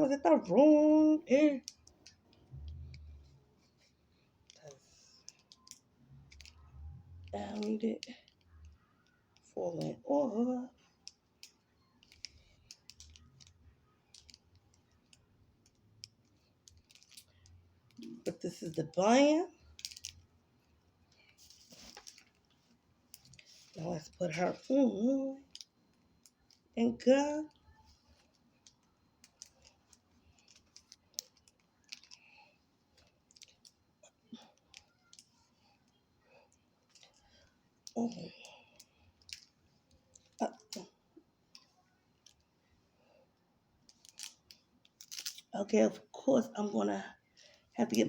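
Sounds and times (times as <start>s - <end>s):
wig rustling: 0.0s - 48.0s
hands handling a wig: 19.7s - 24.7s, 25.5s - 42.9s.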